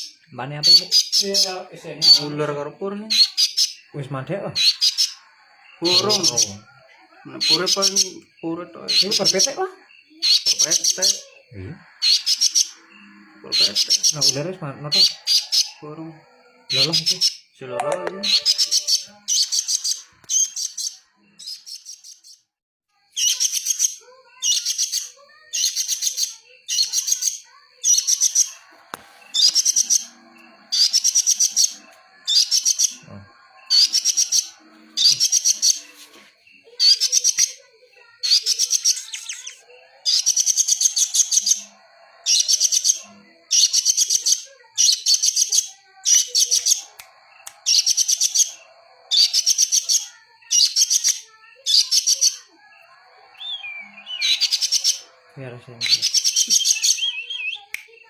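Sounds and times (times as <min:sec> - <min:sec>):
songbird chattering trills: 0:00.0 - 0:17.4, 0:18.2 - 0:22.3, 0:23.2 - 0:58.0
faint high tone: 0:17.6 - 0:19.3.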